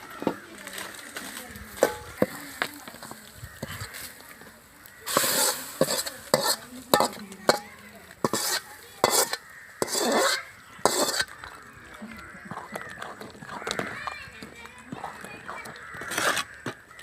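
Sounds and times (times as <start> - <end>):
spoon scraping a cooking pan: 1.7 - 11.4, 14.9 - 16.5.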